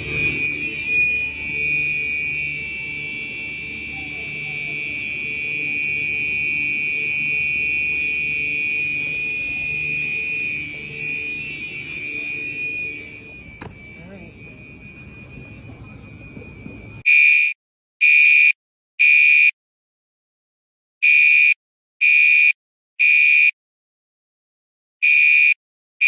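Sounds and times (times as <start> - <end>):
fire alarm horn steady tone: 0.0 - 17.3.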